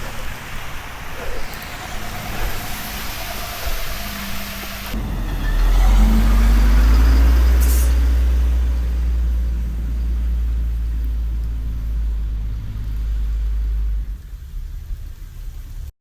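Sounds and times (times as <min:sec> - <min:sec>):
vehicle engine and tyres rumbling: 0:00.0 - 0:16.0
brief hiss: 0:07.5 - 0:08.2.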